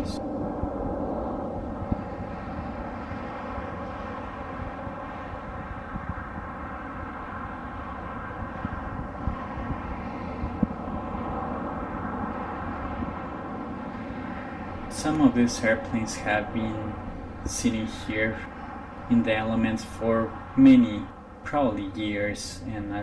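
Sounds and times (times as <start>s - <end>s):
wind thumping on microphone: 0.0s - 22.4s
engine drone with whine: 0.0s - 23.0s
low rumble: 13.8s - 23.0s.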